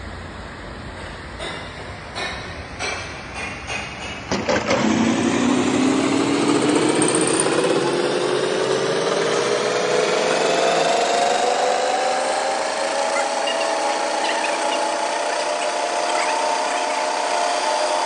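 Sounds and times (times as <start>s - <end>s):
metal lathe machining metal: 11.2s - 18.0s.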